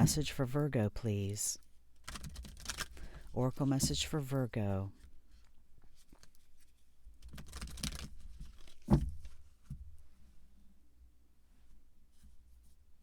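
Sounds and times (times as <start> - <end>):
cards clicking and rustling: 2.0 - 3.9, 7.2 - 8.8
soft thump: 8.9 - 9.8.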